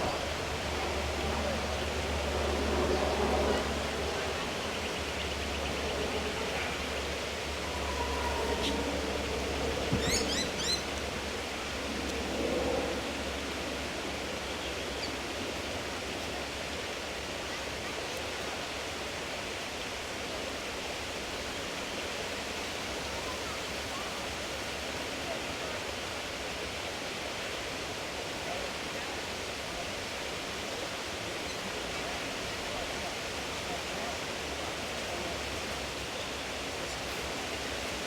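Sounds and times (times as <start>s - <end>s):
steady rushing noise: 0.0s - 17.4s.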